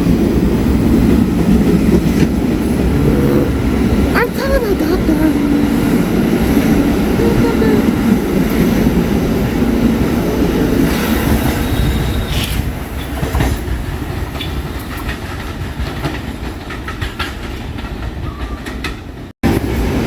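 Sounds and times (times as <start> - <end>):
subway train rumbling: 0.0 - 20.0
wheels clacking over rail joints: 7.9 - 19.9.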